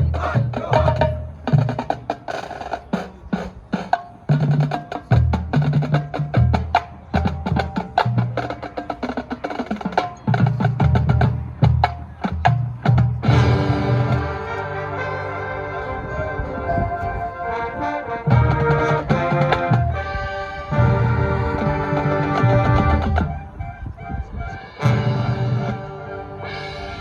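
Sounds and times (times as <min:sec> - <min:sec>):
drums playing: 0:00.0 - 0:14.4, 0:18.3 - 0:20.0.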